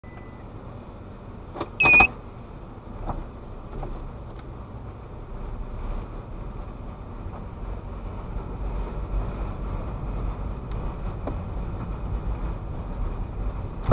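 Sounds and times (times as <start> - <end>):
road and engine rumble: 0.0 - 13.9
high-pitched beep: 1.8 - 2.1.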